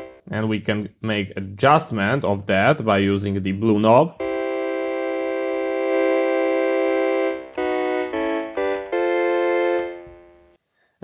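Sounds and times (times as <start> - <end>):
electronic keyboard chords: 0.0 - 0.4, 4.2 - 10.6.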